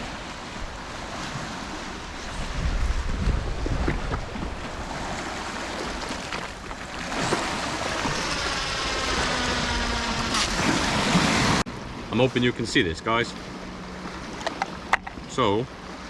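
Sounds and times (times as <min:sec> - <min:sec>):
wind on microphone: 0:00.0 - 0:11.7
waves washing on shore: 0:00.0 - 0:16.0.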